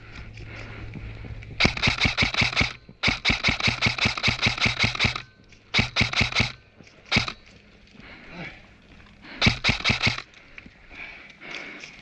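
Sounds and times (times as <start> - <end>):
airsoft rifle rapid pops: 1.6 - 7.4, 9.4 - 10.3.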